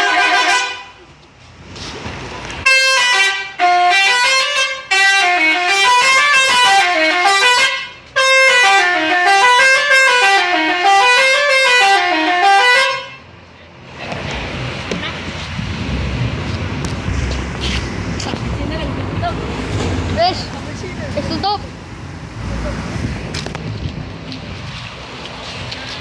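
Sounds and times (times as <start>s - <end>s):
bus horn melody: 0.0s - 1.0s, 2.6s - 13.3s.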